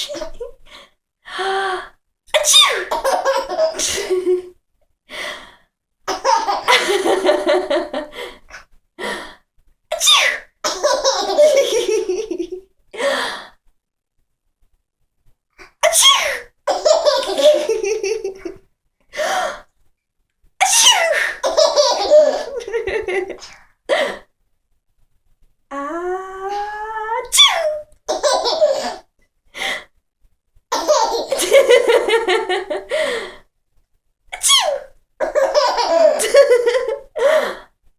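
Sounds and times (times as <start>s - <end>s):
baby laughing and gasping: 2.6s - 4.2s, 20.9s - 22.7s, 28.1s - 29.0s, 30.7s - 31.7s, 34.6s - 36.5s
woman sneezing: 15.8s - 16.5s.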